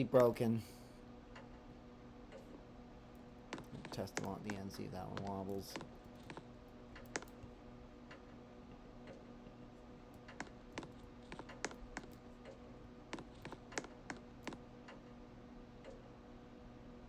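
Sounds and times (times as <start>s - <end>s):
ceiling fan motor hum: 0.0s - 17.0s
light clicks and ticks: 1.3s - 1.6s, 2.3s - 8.4s, 10.1s - 15.2s, 15.8s - 16.1s.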